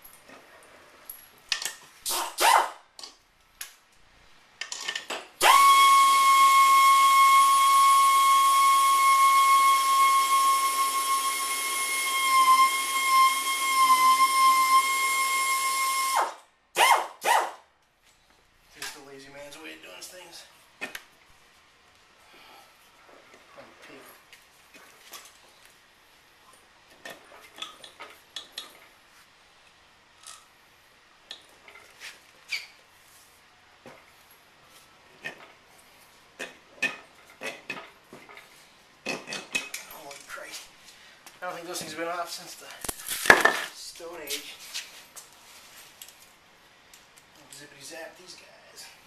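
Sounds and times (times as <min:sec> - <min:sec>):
power tool whining: 0:05.4 - 0:16.3.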